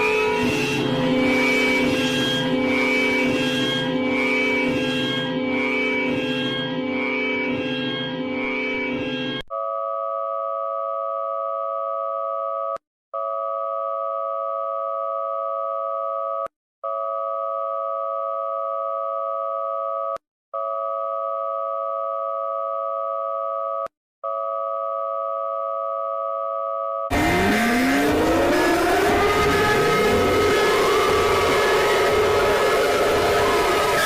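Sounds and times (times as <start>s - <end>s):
noisy sweeping pitches: 27.1s - 34.0s.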